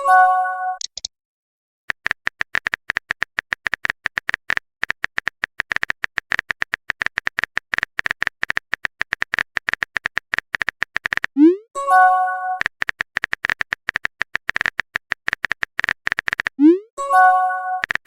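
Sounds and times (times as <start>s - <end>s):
phone keyboard typing clicks: 0.8s - 1.1s, 1.9s - 11.4s, 12.6s - 16.6s, 17.8s - 18.0s.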